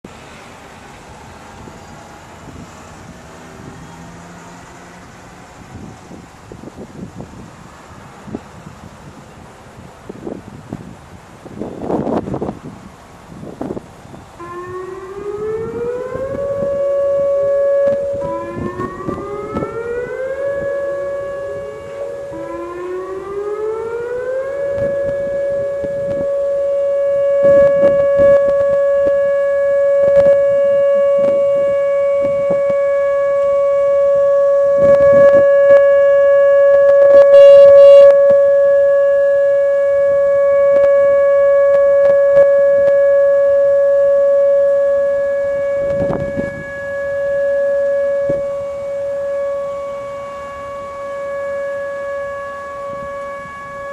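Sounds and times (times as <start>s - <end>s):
warning sirens winding up: 13.7s - 53.9s.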